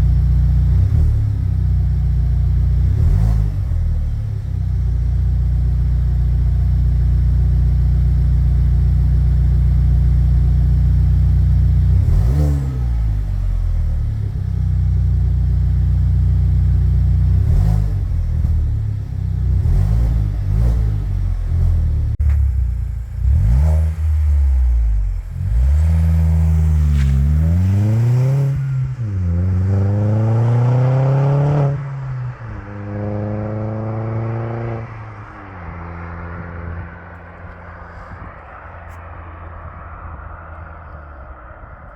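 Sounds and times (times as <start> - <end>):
car engine revving through exhaust: 0.0 - 41.2.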